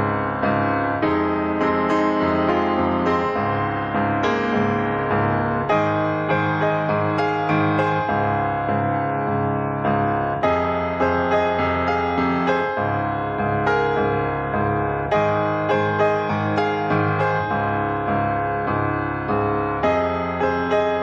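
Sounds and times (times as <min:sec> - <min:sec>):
soft piano music: 0:00.0 - 0:21.0.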